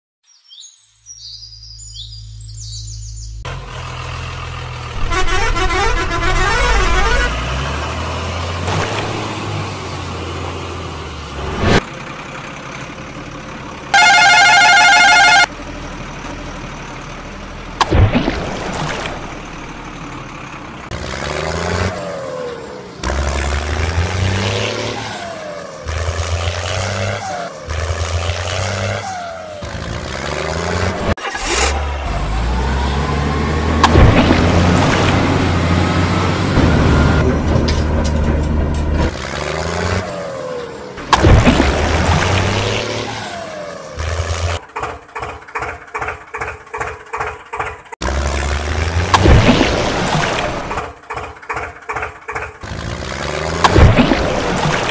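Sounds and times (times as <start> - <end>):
vehicle engine revving: 2.4 - 12.1, 19.1 - 54.9
vehicle horn blast: 5.0 - 7.5, 13.9 - 15.5.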